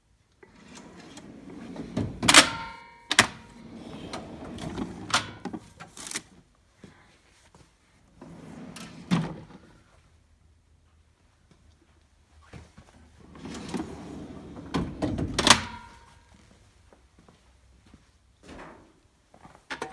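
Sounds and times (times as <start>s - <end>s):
metal drawers sliding and knocking: 0.4s - 5.8s, 8.2s - 9.7s, 13.2s - 16.1s.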